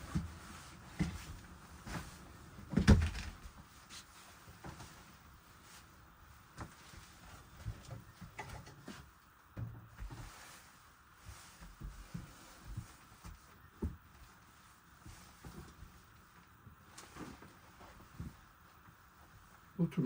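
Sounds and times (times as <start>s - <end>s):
soft knocks and thumps: 7.5s - 10.4s, 11.2s - 14.3s.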